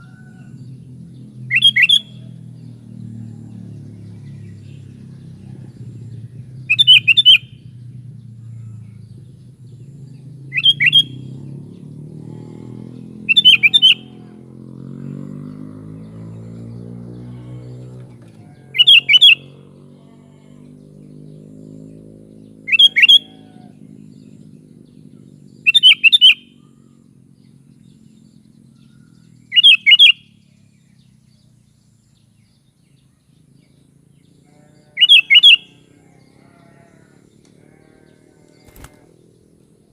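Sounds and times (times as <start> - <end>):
bird calling in loud phrases: 1.5 - 2.5, 6.7 - 7.7, 10.4 - 11.3, 13.0 - 15.2, 18.4 - 20.6, 22.5 - 23.8, 25.6 - 27.0, 28.8 - 30.5, 34.6 - 37.3.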